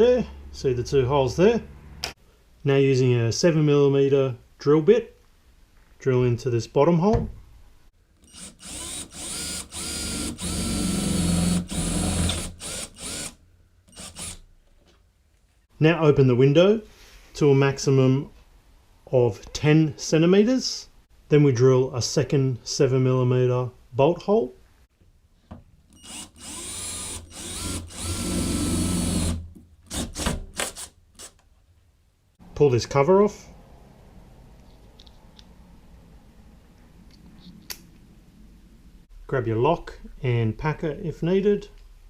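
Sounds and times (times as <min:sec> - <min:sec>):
power drill drilling into metal: 0:08.2 - 0:14.4, 0:26.0 - 0:31.4.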